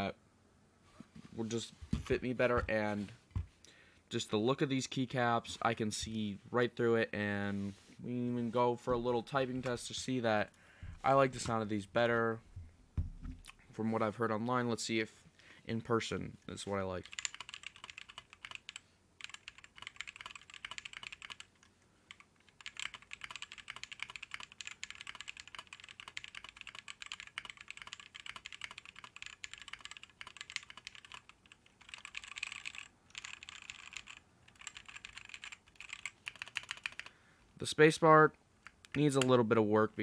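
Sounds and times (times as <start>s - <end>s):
mechanical keyboard typing: 17.0s - 37.1s.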